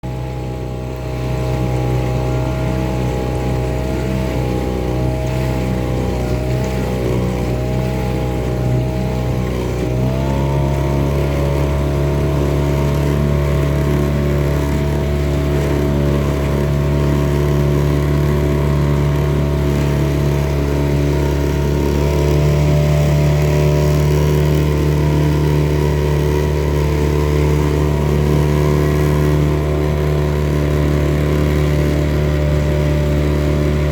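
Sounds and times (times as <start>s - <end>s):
boat engine running: 0.0s - 33.9s.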